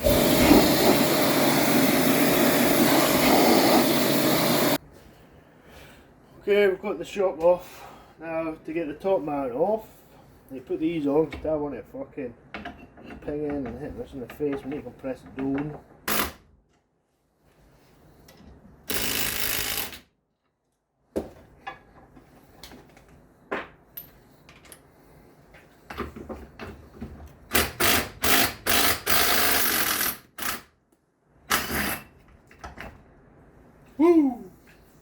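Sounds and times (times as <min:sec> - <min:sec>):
power tool running in bursts: 0:00.0 - 0:04.8.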